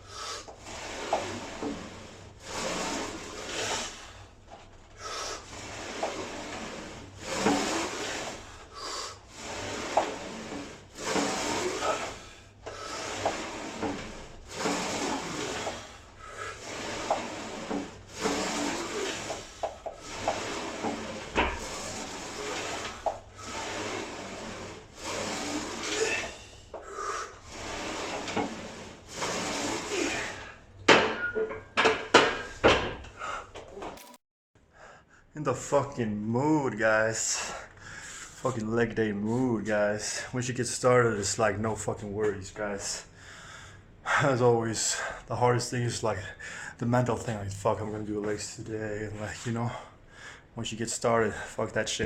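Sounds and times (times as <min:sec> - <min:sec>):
weight machine rasping strokes: 0:00.1 - 0:31.4, 0:33.9 - 0:34.2.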